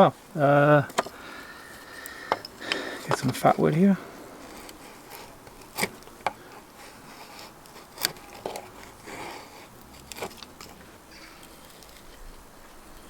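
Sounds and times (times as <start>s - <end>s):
knife crunching into wood: 4.4s - 12.3s
knife scraping wood: 4.4s - 13.0s.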